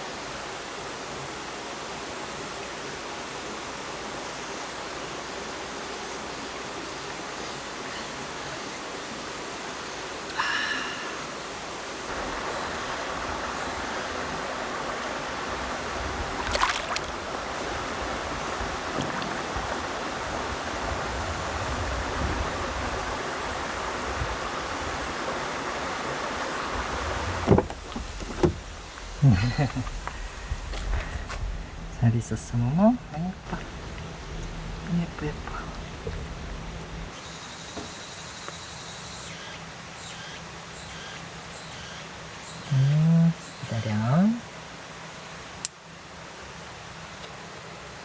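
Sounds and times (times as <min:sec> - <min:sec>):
stream flowing: 0:00.0 - 0:37.6, 0:39.5 - 0:48.0
thump: 0:27.4 - 0:28.6.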